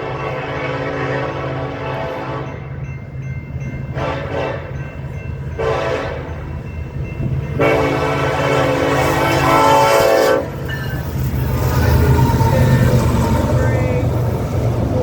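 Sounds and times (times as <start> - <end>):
locomotive air horn blasts: 0.0 - 2.6, 4.0 - 4.7, 5.6 - 6.3, 7.6 - 10.6
passing train rumble: 0.0 - 15.0.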